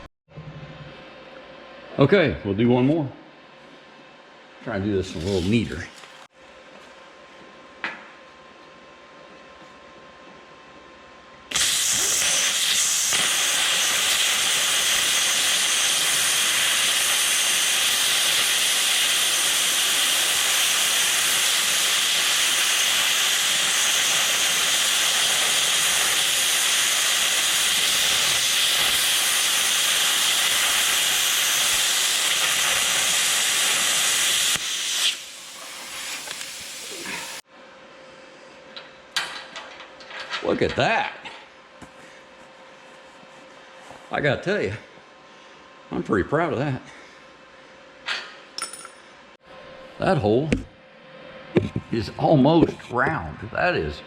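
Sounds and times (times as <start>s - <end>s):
plasma cutter hissing: 11.5s - 37.4s.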